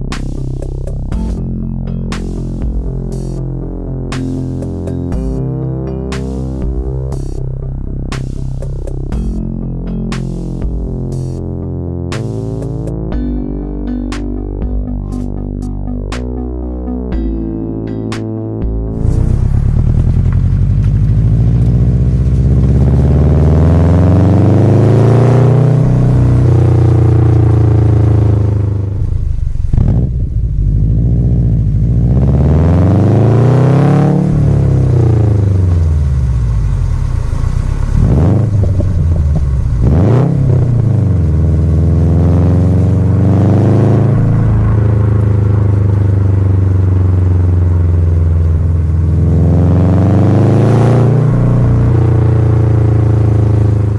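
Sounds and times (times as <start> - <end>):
turbocharged car engine revving: 18.7 - 53.9.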